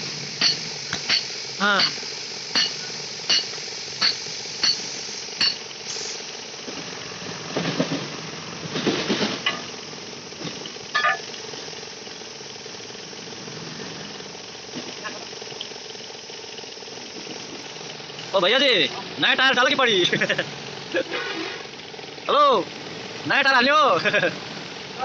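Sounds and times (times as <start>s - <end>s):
steady engine hum: 0.0s - 25.0s
metal tools striking metal: 0.4s - 5.6s, 11.0s - 11.3s.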